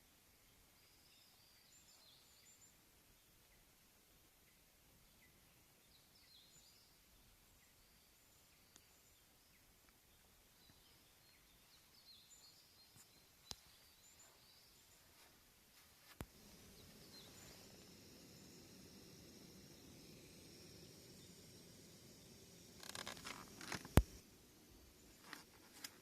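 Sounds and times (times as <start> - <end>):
faint steady hiss: 0.0 - 26.0
bird chirps: 0.4 - 3.7, 4.4 - 15.3, 16.2 - 25.9
sharp clicks: 16.2 - 24.2.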